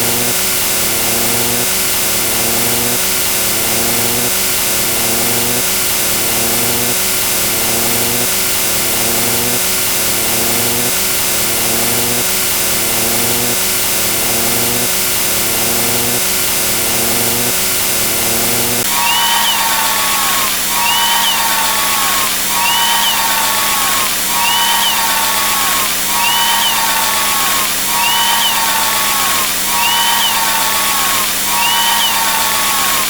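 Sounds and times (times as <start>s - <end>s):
motorcycle engine rising pitch: 18.2s - 33.0s.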